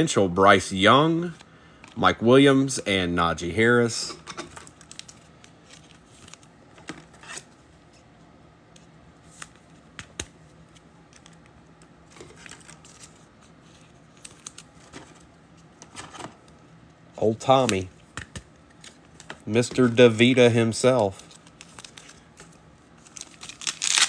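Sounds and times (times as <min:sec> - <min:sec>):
cards being handled: 0:08.8 - 0:16.6, 0:17.3 - 0:24.0.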